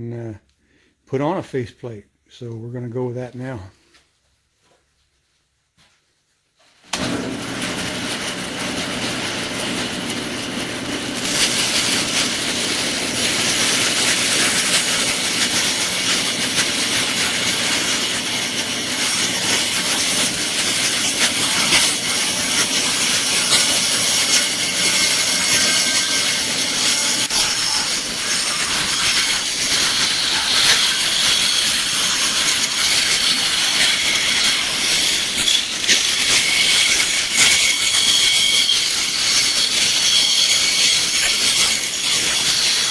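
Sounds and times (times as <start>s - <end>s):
power tool motor humming: 7.0s - 42.9s
hiss of cutting resin and antler: 11.2s - 42.9s.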